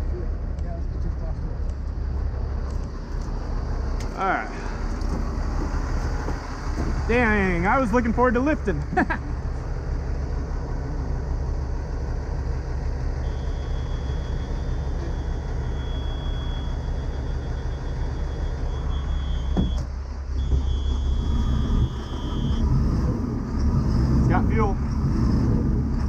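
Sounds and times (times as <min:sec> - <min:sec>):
diesel engine idling: 0:00.0 - 0:26.0
high steady electronic tone: 0:13.2 - 0:19.8, 0:20.4 - 0:22.7.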